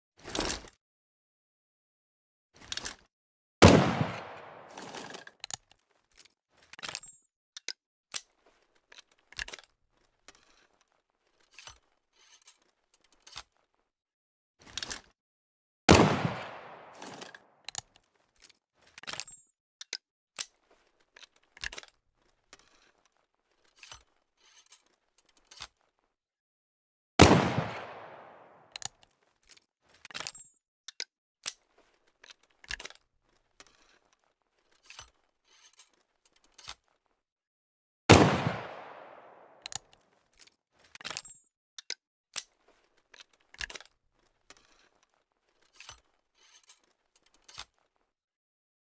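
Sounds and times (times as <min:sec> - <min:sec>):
short clicks and scrapes: 0:02.6 - 0:03.1, 0:07.6 - 0:13.9, 0:17.0 - 0:26.2, 0:30.9 - 0:37.2, 0:39.6 - 0:48.2
pistol shots: 0:03.6 - 0:05.0, 0:15.9 - 0:17.2, 0:27.2 - 0:28.6, 0:38.1 - 0:39.6.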